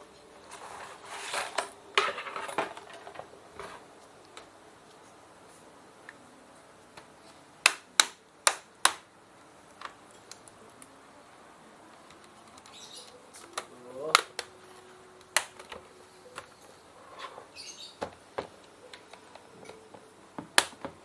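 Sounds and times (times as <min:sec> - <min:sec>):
handling noise: 0:00.0 - 0:05.7
plastic clips snapping loose: 0:07.0 - 0:09.1, 0:11.9 - 0:14.6, 0:15.2 - 0:15.8, 0:18.0 - 0:21.0.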